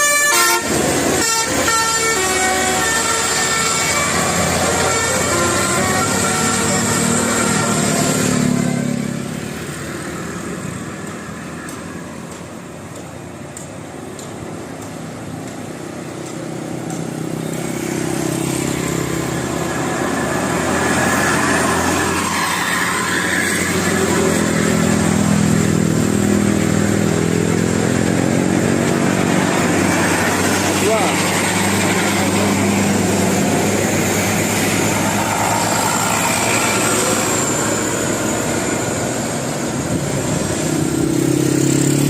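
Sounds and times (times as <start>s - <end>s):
vehicle engine passing: 15.0s - 42.0s.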